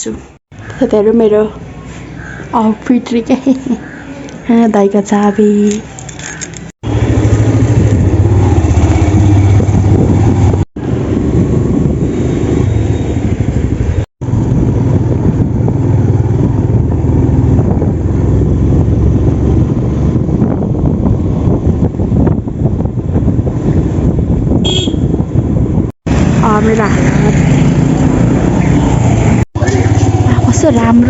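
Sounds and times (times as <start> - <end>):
motorcycle engine running: 6.8 - 31.0
wind on microphone: 6.9 - 31.0.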